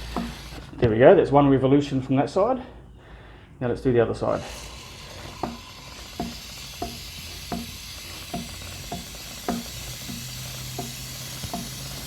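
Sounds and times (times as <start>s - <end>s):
aerosol spray hissing: 0.0s - 0.8s, 4.2s - 12.0s
light clicks of turning wheel: 4.5s - 12.0s.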